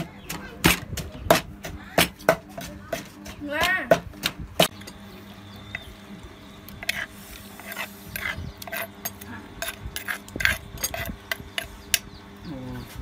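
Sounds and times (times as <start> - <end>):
utensils clinking against dishes: 6.8 - 12.0.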